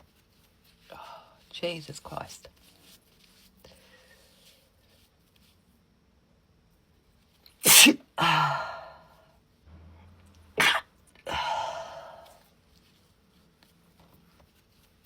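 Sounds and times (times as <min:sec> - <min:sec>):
woman sneezing: 0:07.6 - 0:09.0, 0:10.6 - 0:12.3.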